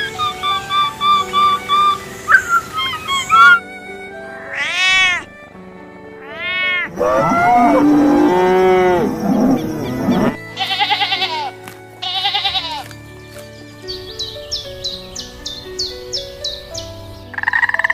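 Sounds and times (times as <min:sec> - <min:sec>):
soft background music: 0:00.0 - 0:17.9
rising-and-falling animal calls: 0:00.4 - 0:03.6, 0:06.2 - 0:10.4
wavering bleats: 0:06.2 - 0:12.8
cow mooing: 0:06.3 - 0:10.4.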